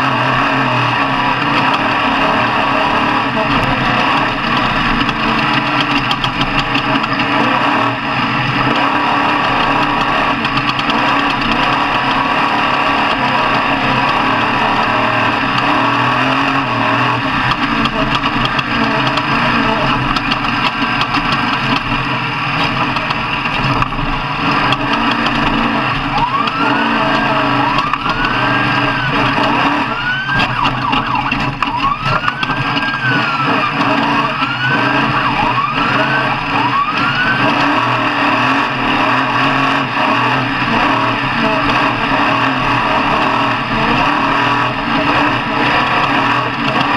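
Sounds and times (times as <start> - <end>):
truck engines running loudly: 0.0 - 46.9
rising and falling siren tone: 25.5 - 46.6.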